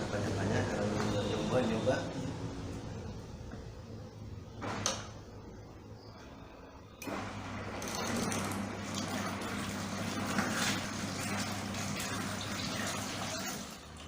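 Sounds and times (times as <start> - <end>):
water pouring into a tub: 7.7 - 14.0.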